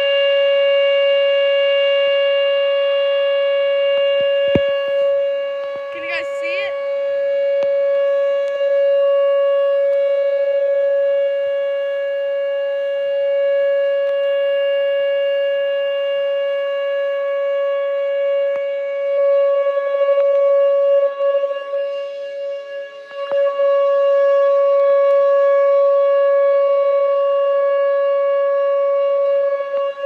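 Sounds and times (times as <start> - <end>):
warning siren steady tone: 0.0 - 30.0.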